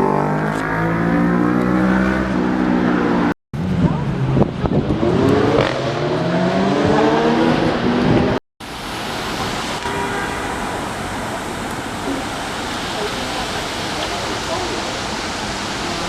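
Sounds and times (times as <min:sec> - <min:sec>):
vehicle engine accelerating: 0:00.0 - 0:08.4.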